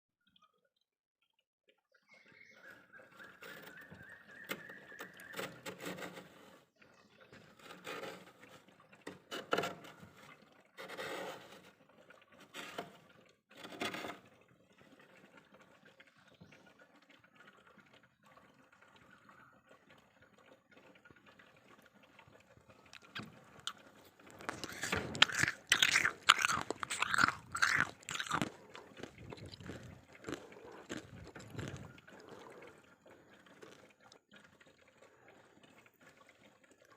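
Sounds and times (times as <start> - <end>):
frost crunching between teeth: 22.9 - 32.7
spoon scraping frost: 23.7 - 31.9.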